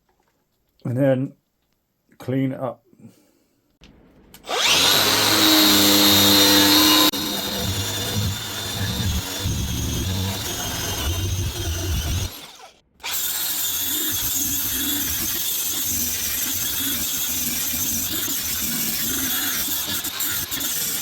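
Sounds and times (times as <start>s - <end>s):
power tool whining against metal: 4.4s - 21.0s.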